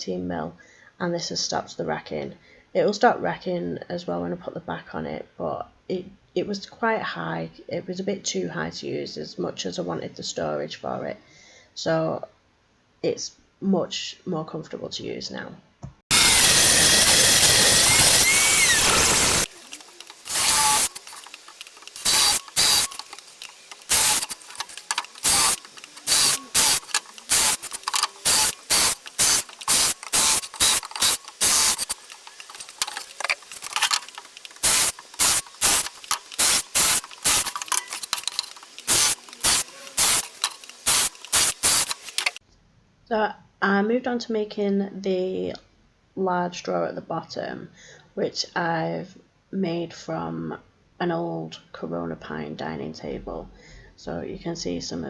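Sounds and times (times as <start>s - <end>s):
spray paint hissing: 16.1s - 42.4s.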